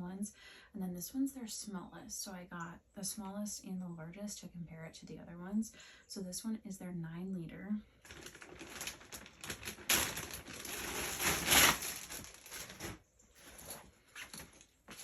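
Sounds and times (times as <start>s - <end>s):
packaging crinkling and rustling: 8.0s - 15.0s.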